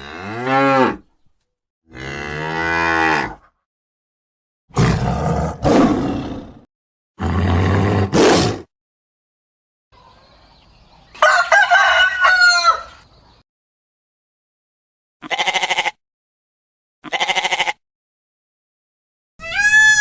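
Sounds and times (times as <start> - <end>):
rooster crowing: 11.2 - 13.0.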